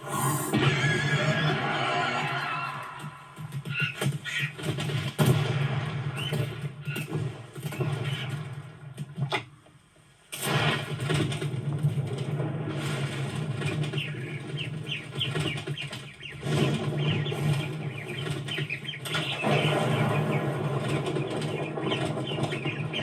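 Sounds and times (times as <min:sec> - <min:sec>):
bird wings flapping: 0:02.8 - 0:05.6, 0:10.5 - 0:23.0.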